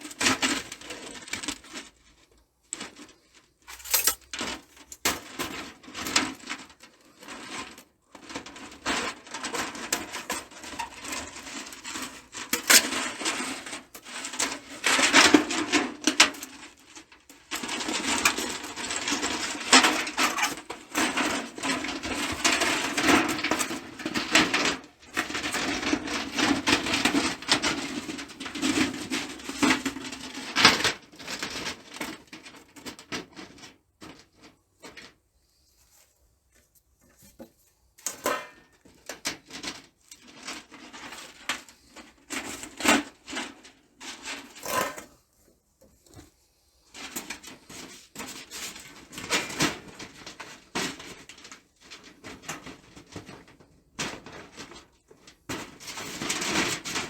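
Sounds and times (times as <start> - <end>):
metal parts clinking and rattling: 3.7 - 6.2.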